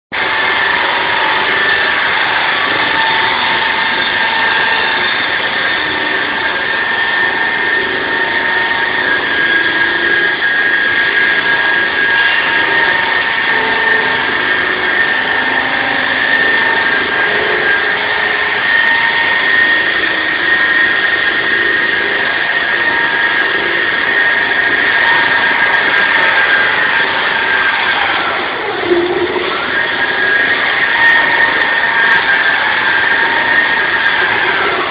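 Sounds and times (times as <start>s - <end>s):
concrete saw running: 0.1s - 34.9s.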